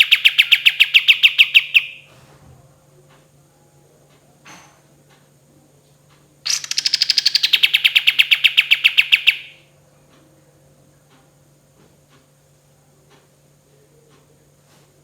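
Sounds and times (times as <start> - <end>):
songbird rattling trill: 0.0 - 2.1, 6.5 - 9.6.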